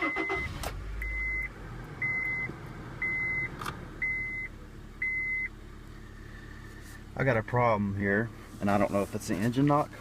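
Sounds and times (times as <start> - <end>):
car warning chime beeping: 0.0 - 5.6
low engine rumble: 0.0 - 10.0.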